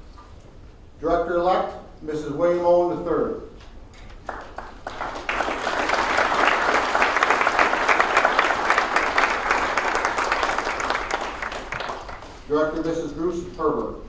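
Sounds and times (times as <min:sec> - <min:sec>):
audience applauding: 0:04.2 - 0:12.5.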